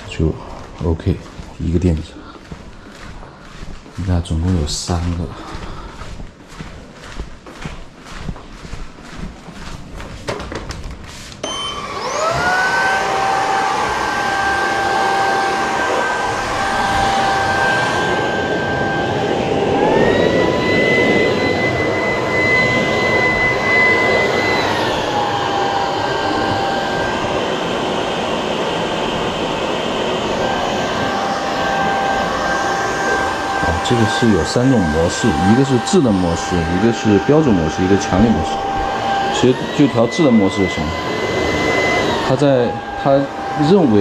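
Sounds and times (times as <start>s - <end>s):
vacuum cleaner motor whine: 0.0s - 44.0s.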